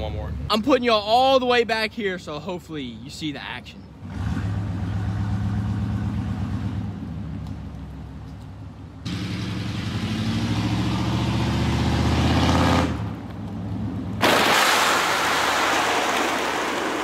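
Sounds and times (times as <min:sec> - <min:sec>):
truck engine idling and revving: 0:03.8 - 0:14.6.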